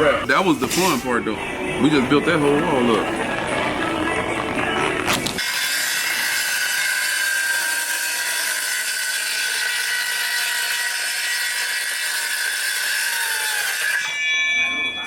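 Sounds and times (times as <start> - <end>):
power tool high-pitched whine: 5.4 - 14.2.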